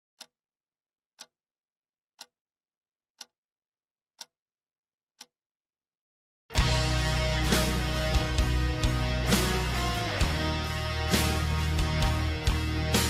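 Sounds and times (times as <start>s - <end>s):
clock ticking: 3.2s - 3.4s, 6.6s - 13.0s.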